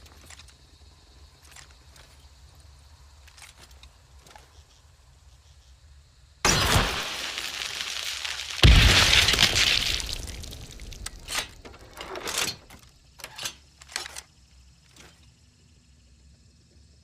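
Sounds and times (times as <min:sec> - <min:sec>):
explosion: 0:06.4 - 0:11.1
sharp cracks and clatters: 0:06.5 - 0:14.3.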